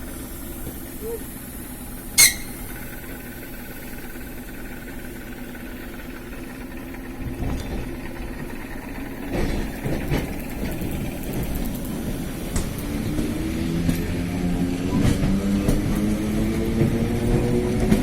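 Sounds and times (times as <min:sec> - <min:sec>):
electric train hum: 0:00.0 - 0:18.0
train rumble: 0:00.0 - 0:18.0
whining tones: 0:02.2 - 0:02.9.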